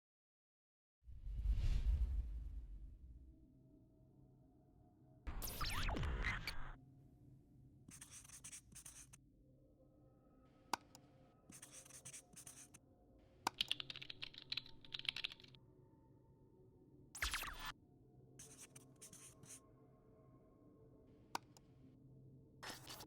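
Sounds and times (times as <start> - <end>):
scratching and rubbing: 22.6 - 23.0.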